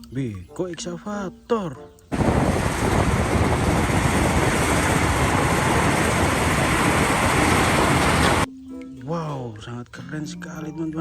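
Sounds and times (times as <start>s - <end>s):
heavy vehicle engine noise: 2.1s - 8.5s.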